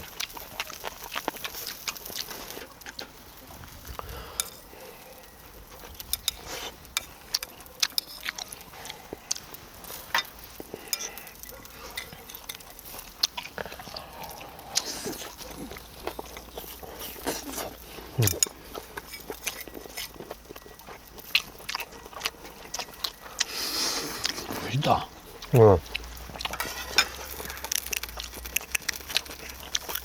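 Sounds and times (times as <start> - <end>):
utensils clinking on dishes: 5.9 - 8.4, 18.2 - 20.7, 26.4 - 27.8.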